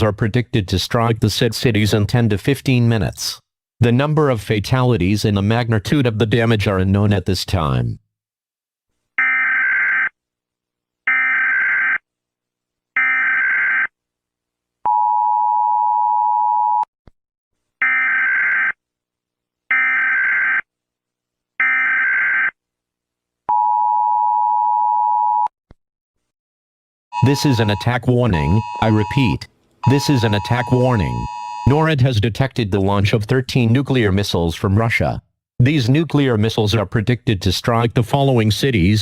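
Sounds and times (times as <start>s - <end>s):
screechy digital data bursts: 27.2s - 31.8s.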